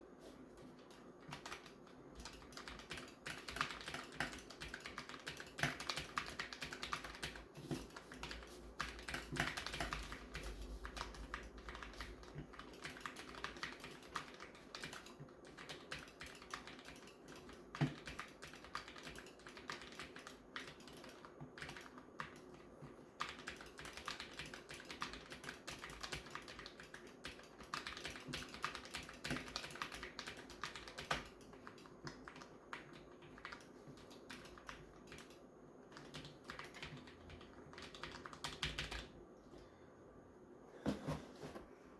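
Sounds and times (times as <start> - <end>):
mechanical keyboard typing: 0.6 - 39.2.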